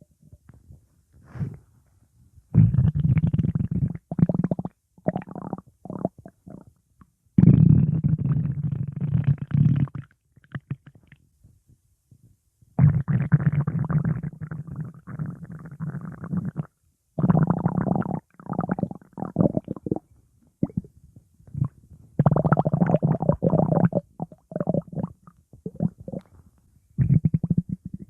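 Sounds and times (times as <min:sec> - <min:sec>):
stomach growling: 0:02.5 - 0:06.7, 0:07.4 - 0:11.2, 0:12.8 - 0:20.0, 0:20.6 - 0:28.0.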